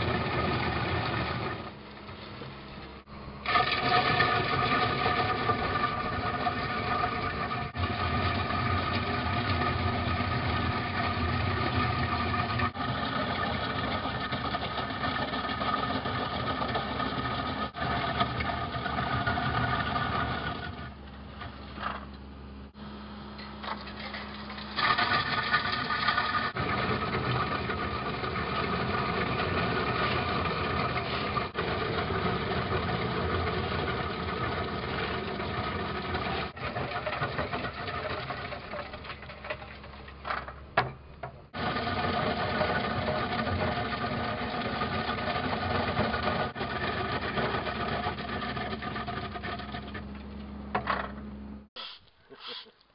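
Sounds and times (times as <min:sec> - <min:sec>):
drum cutter whine: 0:00.0 - 0:24.4
diesel engine and hydraulics: 0:00.0 - 0:52.9.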